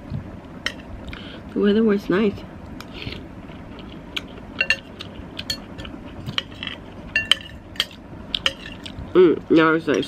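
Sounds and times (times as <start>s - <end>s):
cutlery clinking against a bowl: 4.6s - 9.0s.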